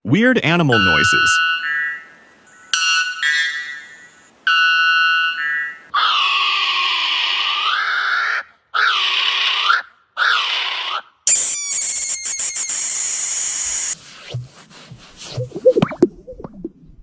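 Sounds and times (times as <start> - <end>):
animal raspy screeches: 5.9 - 13.2
high hissing squeal with clicks: 11.3 - 14.0.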